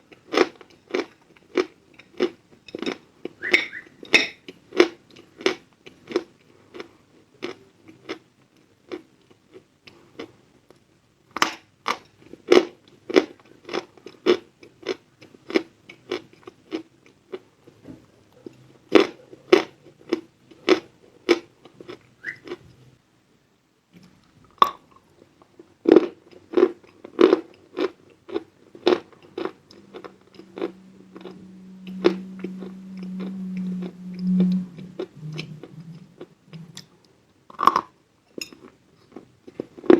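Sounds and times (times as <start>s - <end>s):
low steady hum: 28.7s - 37.8s.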